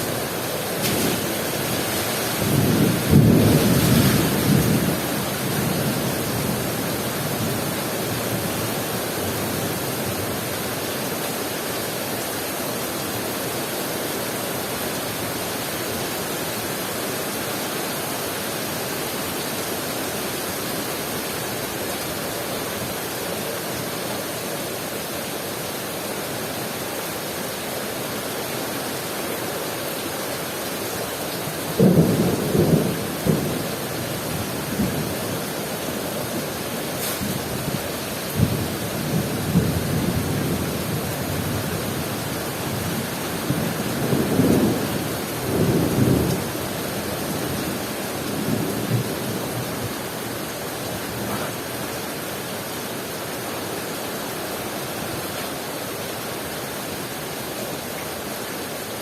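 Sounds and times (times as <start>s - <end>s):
heavy rain pouring: 0.0s - 59.0s
low thunder rumble: 0.9s - 6.6s.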